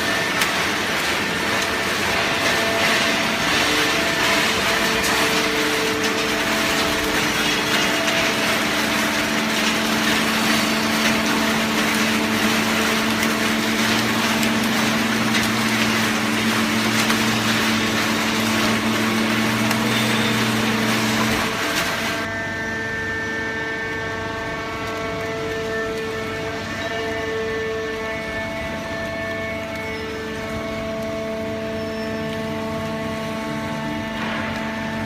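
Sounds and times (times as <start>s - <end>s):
low machine hum: 0.0s - 35.0s.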